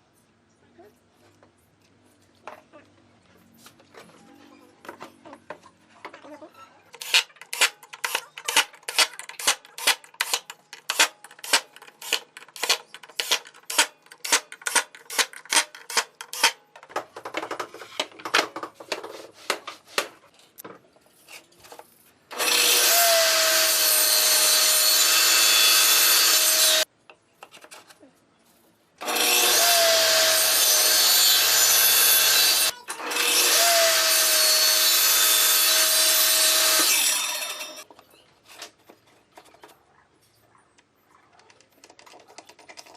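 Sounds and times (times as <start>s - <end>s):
power tool cutting wood: 22.3s - 26.9s, 29.0s - 37.8s.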